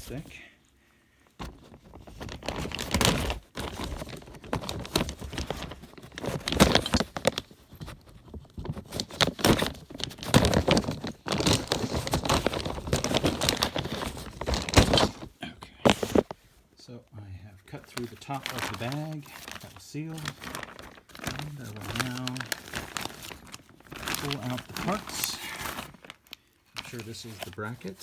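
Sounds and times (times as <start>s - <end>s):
plastic bag crinkling: 1.4s - 16.4s, 17.8s - 28.0s
knife cutting plastic bag: 8.6s - 15.3s, 17.9s - 26.2s.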